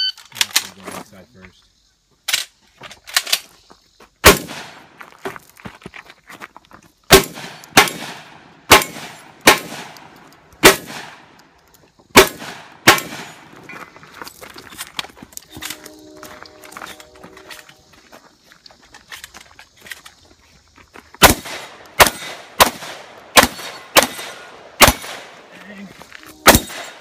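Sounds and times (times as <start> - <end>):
shotgun shots echoing: 4.2 - 4.9, 7.1 - 11.4, 12.1 - 13.6, 21.2 - 25.5, 26.4 - 27.0.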